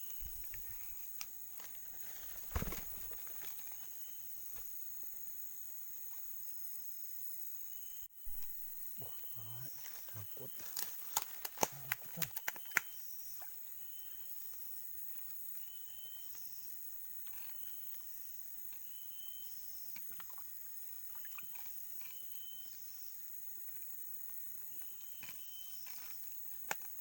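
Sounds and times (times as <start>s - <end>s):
insects droning: 0.0s - 27.0s
faint ticks: 17.2s - 18.9s.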